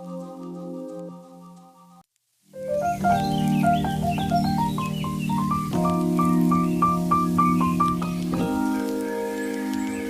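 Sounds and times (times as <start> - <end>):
held synthesizer chords: 2.6 - 10.0.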